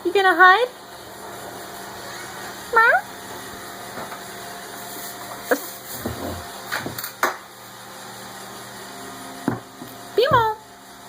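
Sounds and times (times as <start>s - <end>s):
robot vacuum humming: 0.6s - 6.9s.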